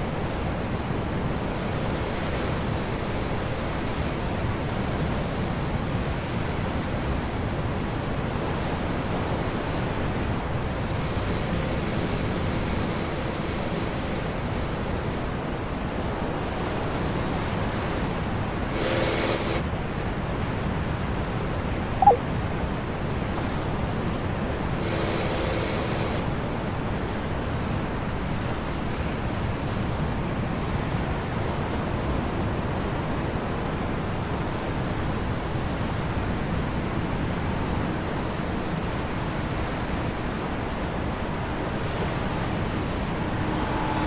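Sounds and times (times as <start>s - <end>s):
boat engine wind and water roar: 0.0s - 44.0s
sharp squeak: 22.0s - 22.2s
brief tones: 22.0s - 22.3s.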